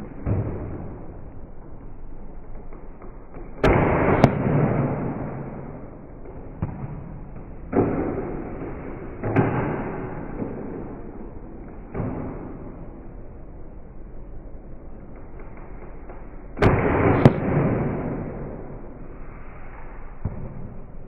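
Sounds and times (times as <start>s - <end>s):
foam dart blaster pops: 3.3s - 5.7s, 16.6s - 18.6s.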